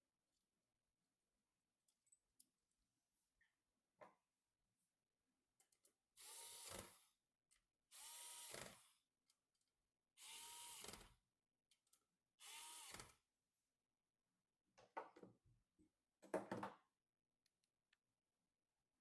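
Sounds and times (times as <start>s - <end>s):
electric screwdriver whine: 7.9s - 8.8s, 10.2s - 11.0s, 12.4s - 13.1s.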